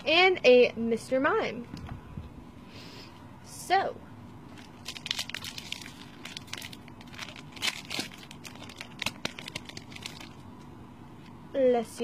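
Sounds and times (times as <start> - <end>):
foil wrapper crinkling and tearing: 4.5 - 10.5.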